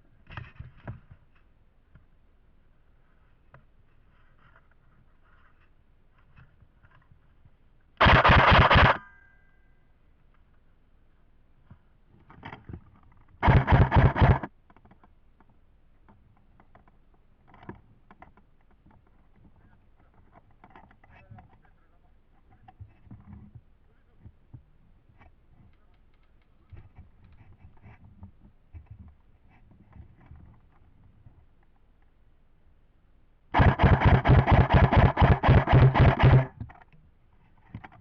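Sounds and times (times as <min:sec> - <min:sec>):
airsoft gun full-auto bursts: 0:08.0 - 0:09.0, 0:13.4 - 0:14.5, 0:33.6 - 0:36.6
small clicks: 0:25.6 - 0:27.5.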